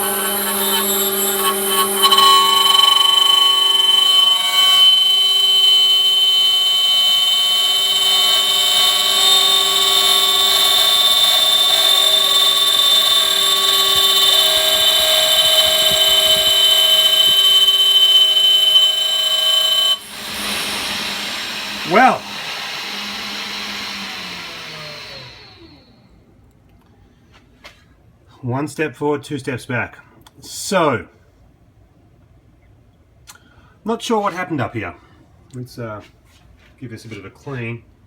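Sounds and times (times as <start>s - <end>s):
lower motor tone: 0.0s - 25.9s
metal lathe high-pitched whine: 0.0s - 26.0s.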